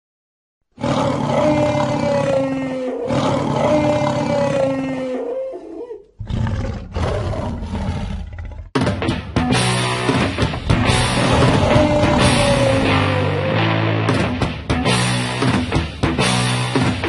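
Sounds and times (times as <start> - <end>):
deep rough dinosaur roar: 0.8 - 5.6, 6.2 - 8.8, 10.5 - 14.1
long pitched dinosaur roars: 0.8 - 8.8, 10.6 - 14.0.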